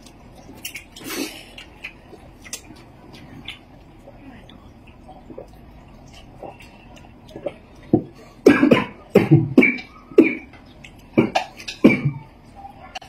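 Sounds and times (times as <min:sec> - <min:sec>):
person coughing: 0:08.4 - 0:10.5, 0:11.2 - 0:12.2.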